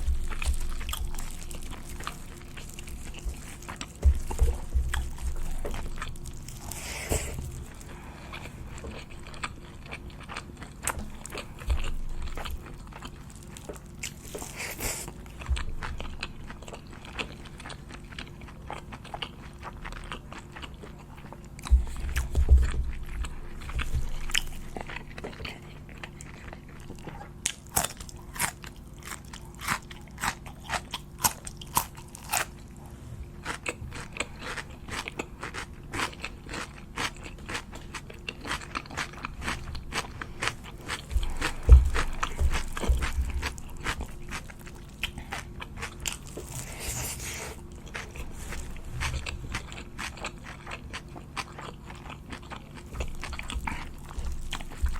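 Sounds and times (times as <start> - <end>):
crunching and chewing food: 0.0 - 54.9.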